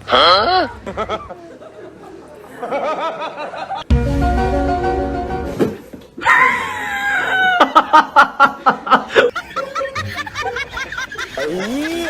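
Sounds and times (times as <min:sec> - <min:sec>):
brief music: 0:03.9 - 0:05.6.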